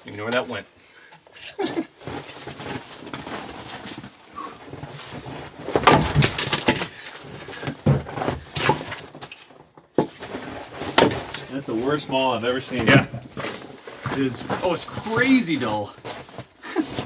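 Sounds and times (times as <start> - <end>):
maul splitting firewood: 5.7 - 9.3.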